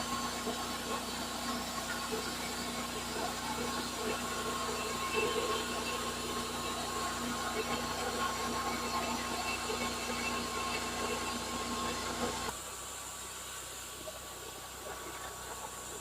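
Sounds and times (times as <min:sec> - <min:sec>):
band sawmill running: 0:00.0 - 0:12.7
high mechanical whine: 0:00.0 - 0:16.0.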